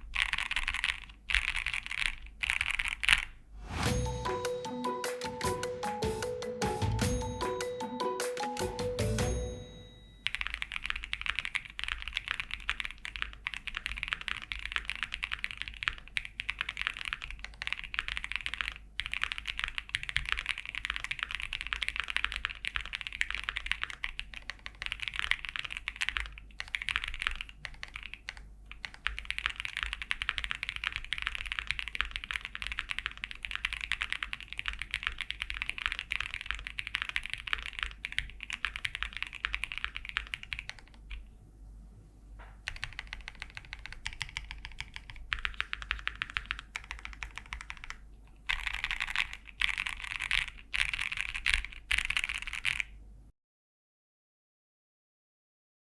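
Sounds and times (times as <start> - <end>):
mechanical keyboard typing: 0.0 - 3.4, 10.2 - 41.2, 42.6 - 52.9.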